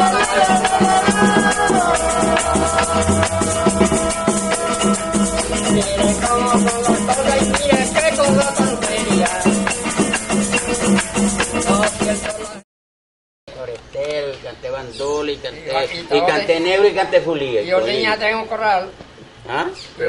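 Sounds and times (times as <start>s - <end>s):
folk melody: 0.0s - 12.6s
maracas shaken: 0.0s - 12.6s.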